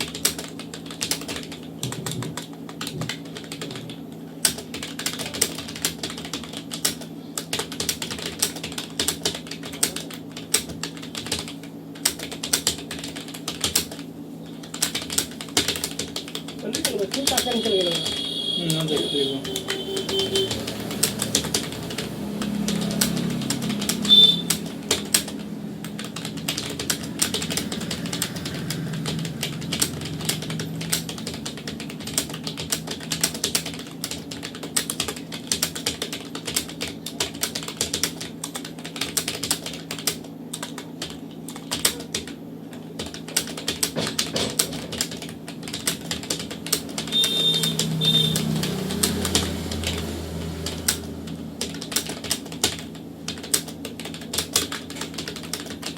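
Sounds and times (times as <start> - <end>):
fast typing on computer keyboard: 0.0 - 55.9
short high beeps: 24.0 - 24.5, 47.1 - 48.4.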